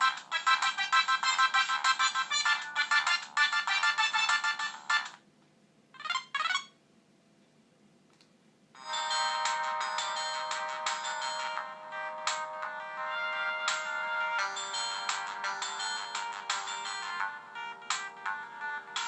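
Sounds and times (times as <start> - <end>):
mobile phone ringtone melody: 8.8 - 19.0.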